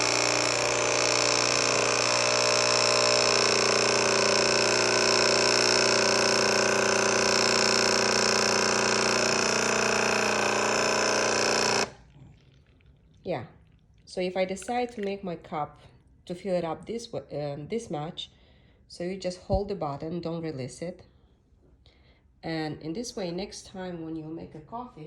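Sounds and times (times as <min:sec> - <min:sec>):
coffee machine pump running: 0:00.0 - 0:13.1.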